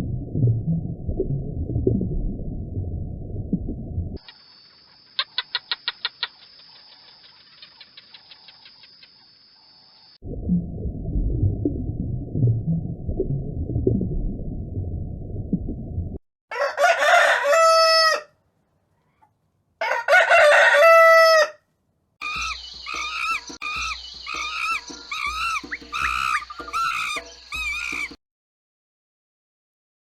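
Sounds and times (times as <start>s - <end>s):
rooster crowing: 16.5s - 18.4s, 19.8s - 21.6s
short repeated calls: 22.2s - 28.2s.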